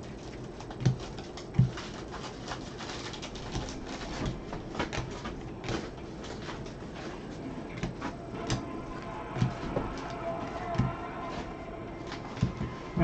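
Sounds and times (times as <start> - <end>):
cards clicking and rustling: 0.0 - 8.7, 9.4 - 13.0.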